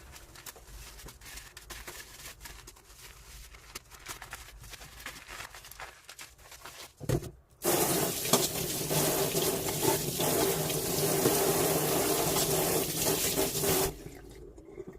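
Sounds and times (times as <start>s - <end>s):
tap water running into sink: 7.6s - 14.9s.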